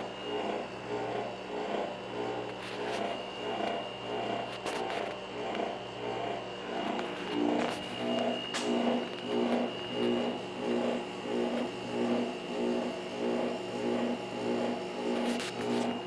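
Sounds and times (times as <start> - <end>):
compressor high whine: 0.0 - 16.0
compressor low hum: 0.0 - 16.0
pitched pulsing noise: 5.3 - 16.0.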